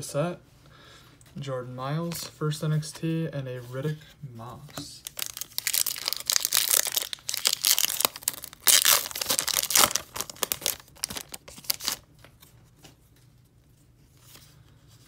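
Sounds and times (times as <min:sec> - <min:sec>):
wrapper crinkling and tearing: 0:05.0 - 0:12.1.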